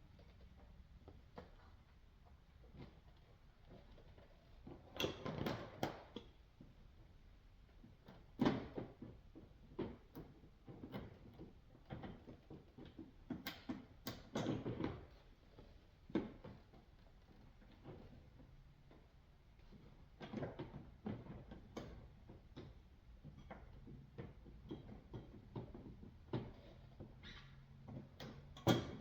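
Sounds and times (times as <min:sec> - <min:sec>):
tools clicking and knocking: 0:27.8 - 0:29.0.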